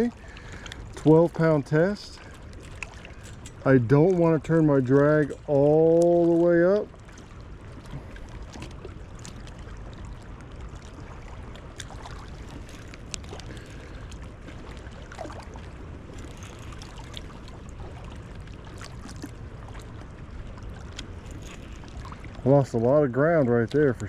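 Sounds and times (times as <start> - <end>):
river water running: 0.0 - 24.0.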